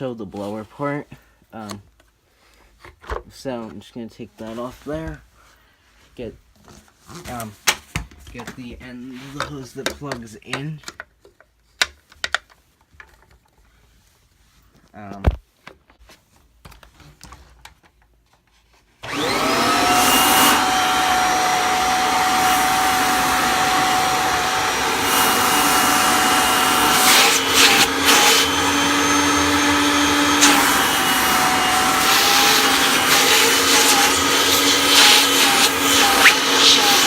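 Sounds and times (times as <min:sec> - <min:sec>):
vacuum cleaner motor whine: 0:19.0 - 0:37.0.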